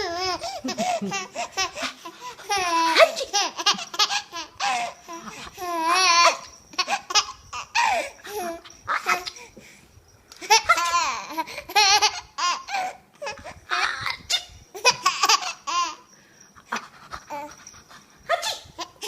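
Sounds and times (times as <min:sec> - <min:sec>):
baby laughing: 0:00.0 - 0:09.4, 0:10.4 - 0:16.0.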